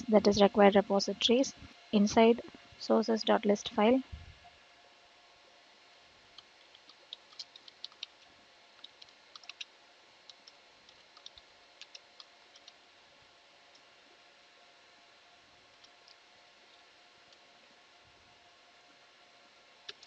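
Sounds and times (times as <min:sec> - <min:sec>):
computer keys typing: 0:06.4 - 0:08.2, 0:08.8 - 0:09.7, 0:10.3 - 0:12.8.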